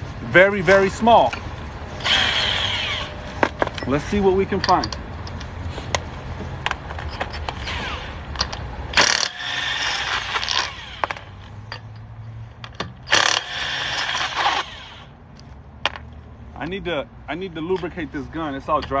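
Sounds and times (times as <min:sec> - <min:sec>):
sharp metal clicks: 0:02.0 - 0:16.8
impact gun spinning off lug nuts: 0:07.4 - 0:11.4, 0:13.0 - 0:15.1.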